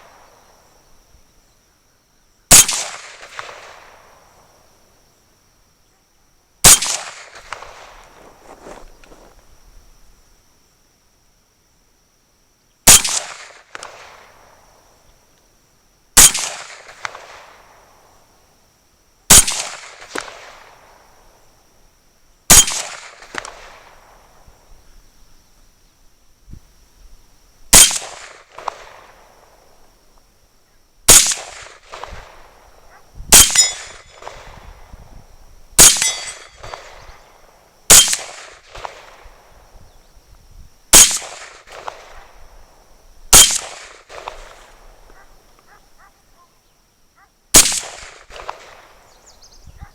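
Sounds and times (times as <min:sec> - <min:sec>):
rifle shots with echo: 0:02.5 - 0:04.4, 0:06.6 - 0:08.2, 0:12.9 - 0:14.5, 0:16.2 - 0:17.8, 0:19.3 - 0:21.2, 0:22.5 - 0:24.4, 0:27.7 - 0:29.5, 0:31.1 - 0:35.0, 0:35.8 - 0:39.5, 0:40.9 - 0:42.5, 0:43.3 - 0:45.3, 0:47.5 - 0:49.2.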